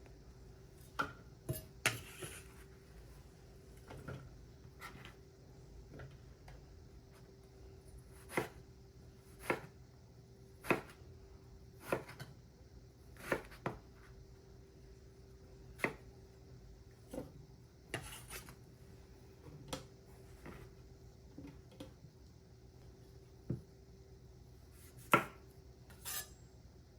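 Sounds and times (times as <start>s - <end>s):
knife chopping on cutting board: 8.2s - 8.6s, 9.4s - 9.7s, 10.6s - 11.0s, 24.8s - 25.4s.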